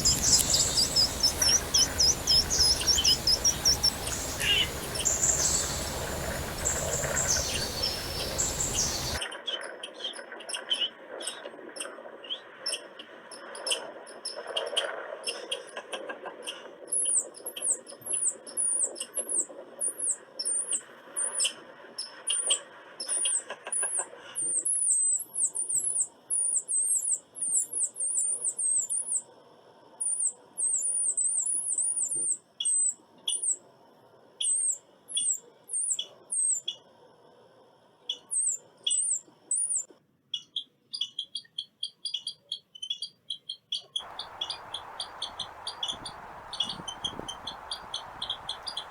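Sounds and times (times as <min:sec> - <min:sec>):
clicking: 0:00.0 - 0:02.0
background hiss: 0:00.0 - 0:09.2, 0:44.0 - 0:48.9
squirrel squeaky chirps: 0:00.0 - 0:09.2, 0:38.1 - 0:48.9.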